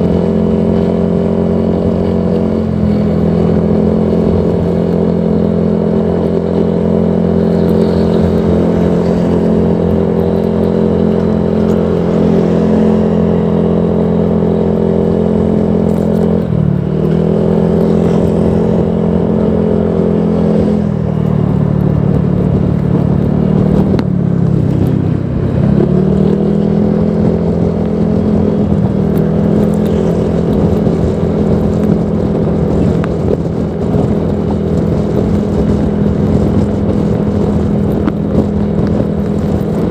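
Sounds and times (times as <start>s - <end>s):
scooter engine running: 0.0s - 39.9s.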